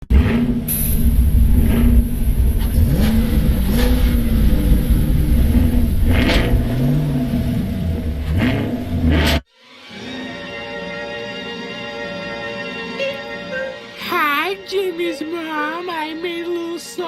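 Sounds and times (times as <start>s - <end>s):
engine revving with low rumble: 0.0s - 9.5s.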